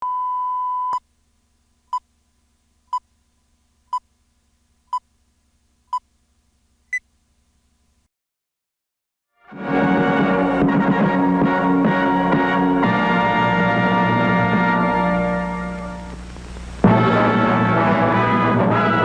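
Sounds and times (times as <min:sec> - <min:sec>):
short countdown beeps: 0:00.0 - 0:01.0.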